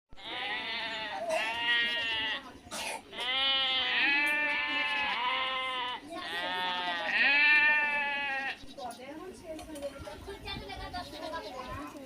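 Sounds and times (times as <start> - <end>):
animal bleating: 0.2 - 8.7.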